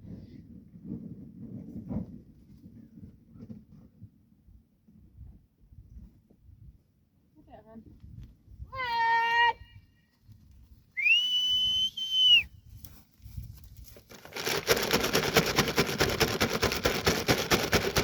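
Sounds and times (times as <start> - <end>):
long high whistle: 11.0 - 12.6
fast rattling rustle: 13.2 - 18.0.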